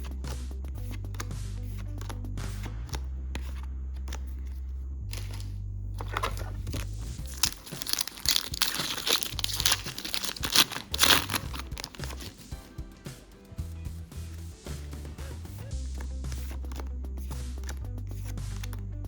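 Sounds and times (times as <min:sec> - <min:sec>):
low background music: 0:00.0 - 0:19.0
foil wrapper crinkling and tearing: 0:05.1 - 0:12.6.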